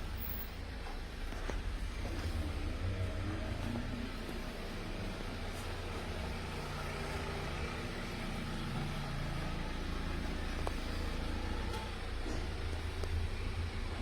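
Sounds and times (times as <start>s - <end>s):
motorcycle engine idling: 0.0s - 14.0s.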